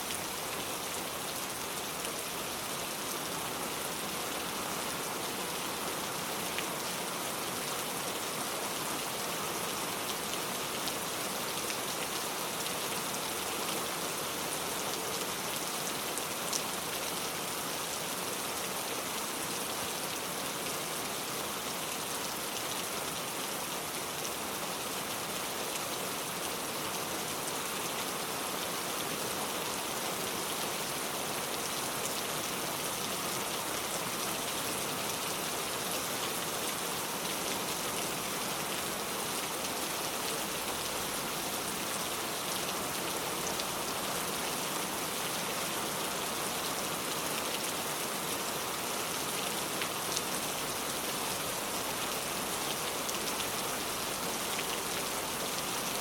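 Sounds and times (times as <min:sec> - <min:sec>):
steady rain falling: 0:00.0 - 0:56.0.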